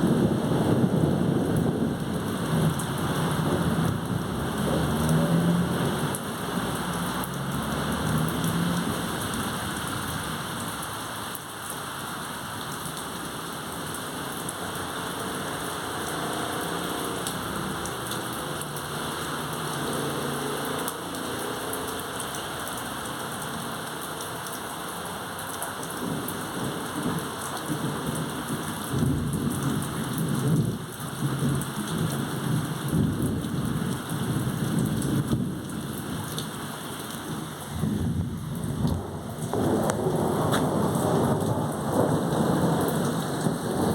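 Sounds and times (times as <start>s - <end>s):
thunder rumbling: 0.0s - 7.4s, 26.0s - 36.3s, 37.2s - 43.9s
steady rain falling: 0.0s - 43.9s.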